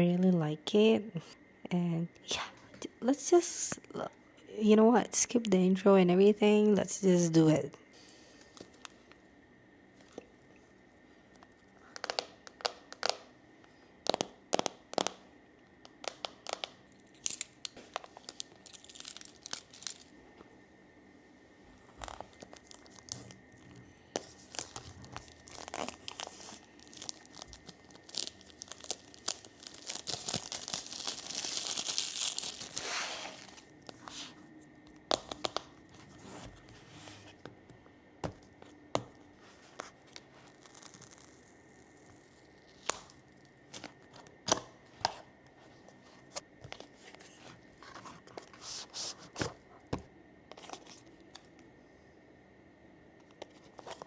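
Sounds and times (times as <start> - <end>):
packaging crinkling and rustling: 15.9 - 20.2, 21.9 - 37.4, 39.5 - 44.6, 45.9 - 51.5, 53.2 - 54.0
packaging tearing: 17.1 - 20.1, 22.0 - 23.4, 24.2 - 34.0, 40.1 - 43.2.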